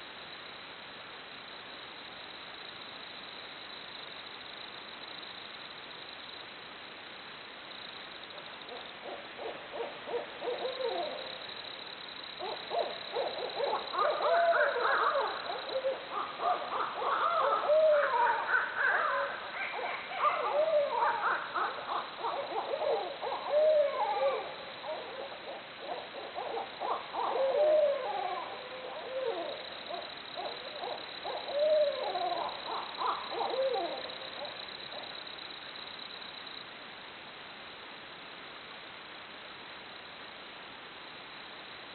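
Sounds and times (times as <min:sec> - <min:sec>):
faint hiss: 0:00.0 - 0:41.9
owls hooting and cackling: 0:08.7 - 0:11.3, 0:12.4 - 0:34.6.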